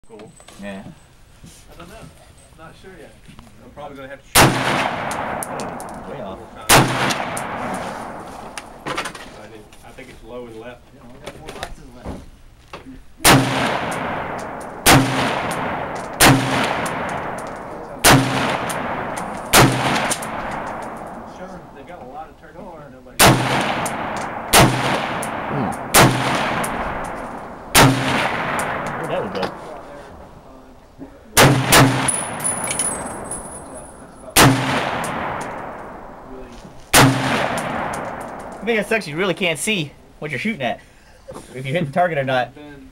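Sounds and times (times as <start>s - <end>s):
rifle shots with echo: 4.4s - 9.0s, 13.2s - 22.2s, 23.2s - 30.1s, 31.3s - 39.0s.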